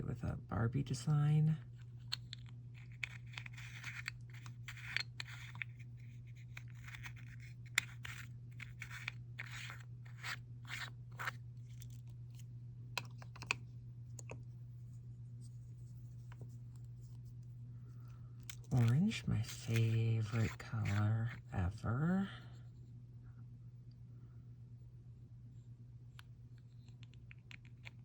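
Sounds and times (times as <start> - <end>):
steady low hum: 0.0 - 28.0
small jars clicking and tapping: 13.0 - 13.6.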